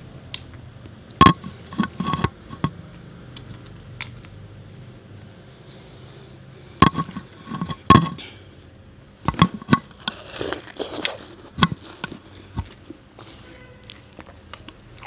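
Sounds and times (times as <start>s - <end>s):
wet chewing: 0.9s - 4.4s, 9.3s - 15.0s
crisp watermelon crunches: 9.8s - 15.0s.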